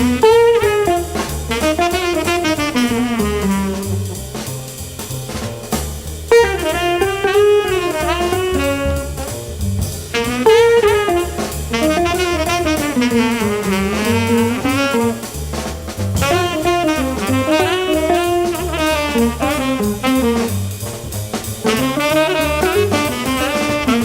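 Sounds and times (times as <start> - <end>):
bass: 0.0 - 24.0
drum kit: 0.0 - 24.0
saxophone melody with vibrato: 0.2 - 1.0, 6.3 - 9.1, 10.4 - 15.1, 16.2 - 19.2.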